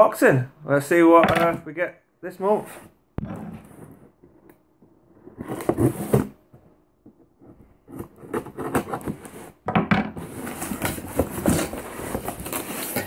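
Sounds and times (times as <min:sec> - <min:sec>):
cardboard box rustling and scraping: 0:05.2 - 0:06.5, 0:10.2 - 0:13.0.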